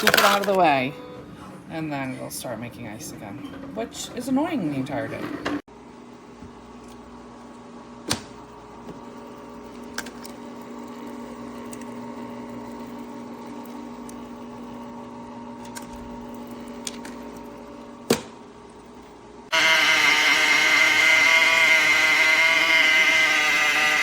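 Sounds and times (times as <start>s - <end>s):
ice maker humming: 0.0s - 1.2s, 6.7s - 24.0s.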